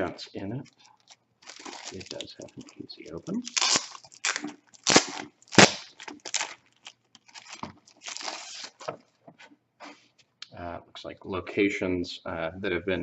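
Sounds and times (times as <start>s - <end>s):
plastic pouch tearing and crinkling: 0.6s - 8.9s.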